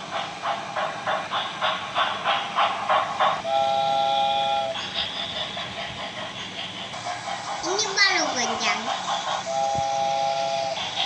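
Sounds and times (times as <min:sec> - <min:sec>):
electronic train chuffing: 0:00.0 - 0:11.0
toy train whistle: 0:03.4 - 0:04.8, 0:09.5 - 0:10.8.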